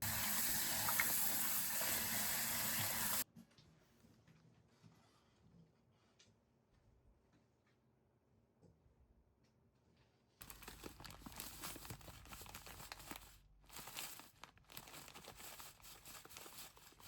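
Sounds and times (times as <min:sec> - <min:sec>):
crinkling and rustling: 0:10.4 - 0:17.0.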